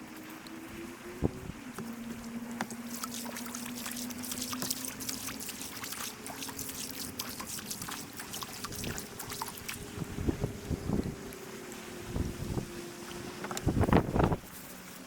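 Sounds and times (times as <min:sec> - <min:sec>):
water trickling and dripping: 0:00.0 - 0:14.1.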